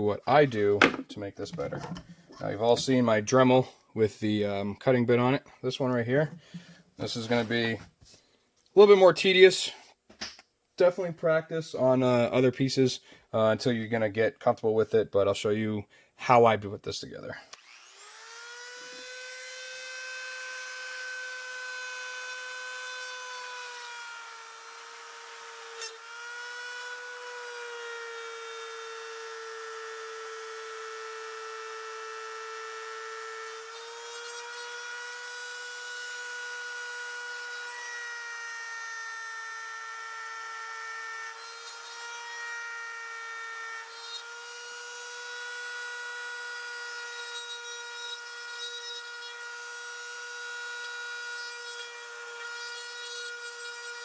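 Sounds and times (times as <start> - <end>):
rotary tool cutting plastic: 17.5 - 54.0.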